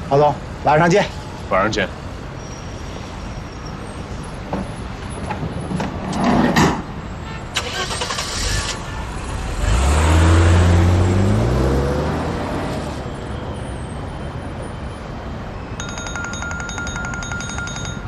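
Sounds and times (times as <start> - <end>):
road noise: 0.0 - 18.0
car engine accelerating: 9.3 - 13.0.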